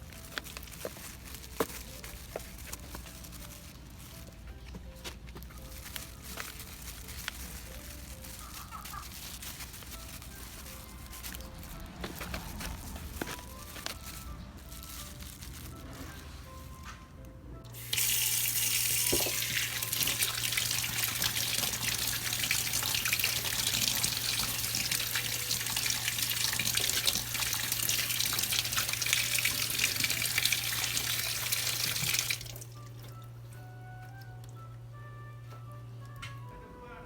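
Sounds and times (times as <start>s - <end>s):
tap water running into sink: 17.8s - 32.7s.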